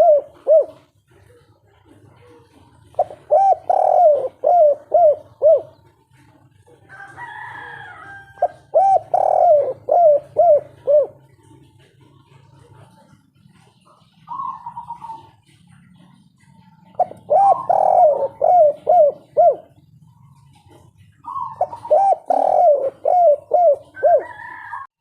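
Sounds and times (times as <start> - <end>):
dove cooing: 0.0 - 25.0.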